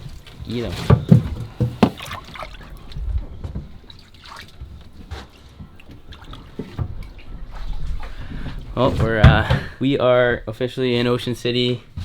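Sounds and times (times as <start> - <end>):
water dripping and trickling: 0.0 - 9.3
low rumble: 2.9 - 3.8.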